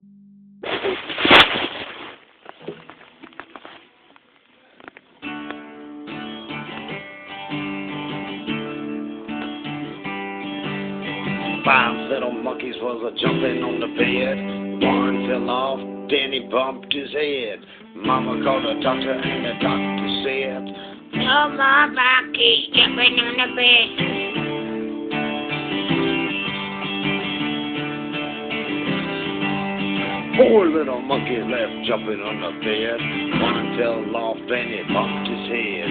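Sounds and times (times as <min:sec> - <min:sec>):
acoustic guitar strumming: 0:05.2 - 0:35.9.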